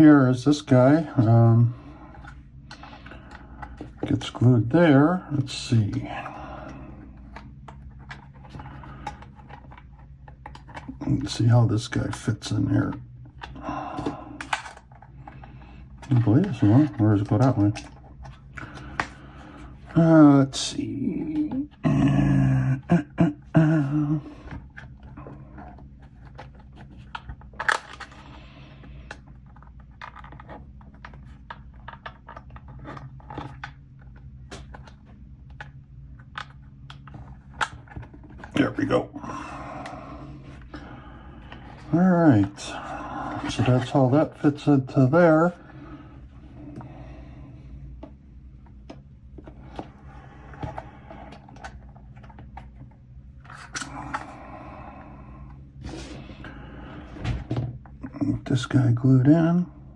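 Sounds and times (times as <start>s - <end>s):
steady low hum: 0.0s - 59.9s
plastic parts clicking and tapping: 29.0s - 38.6s.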